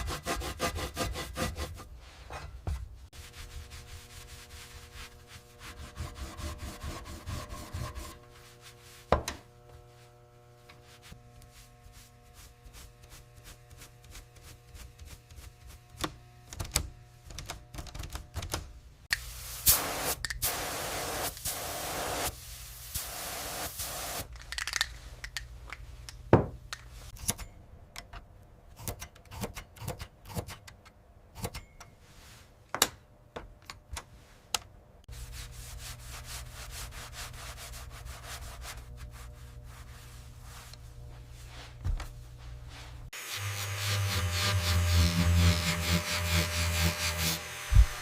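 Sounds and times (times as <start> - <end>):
sanding metal parts: 3.2 - 9.1, 43.2 - 48.0.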